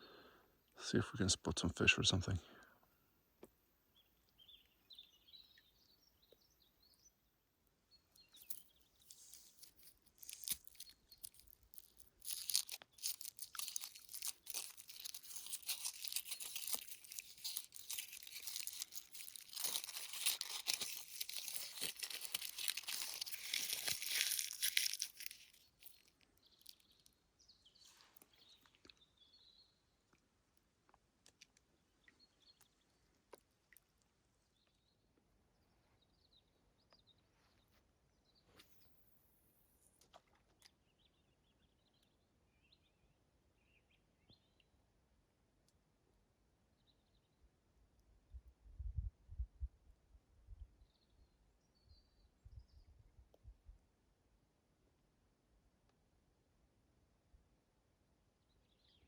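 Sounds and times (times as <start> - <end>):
small birds chirping: 3.9 - 30.2, 31.4 - 39.1, 58.4 - 59.0
rustling and crunching: 8.2 - 27.2.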